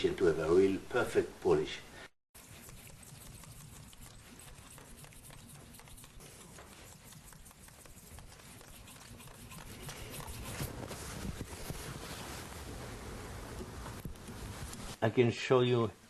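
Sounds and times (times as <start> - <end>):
cutter clicking and scratching: 2.4 - 10.8.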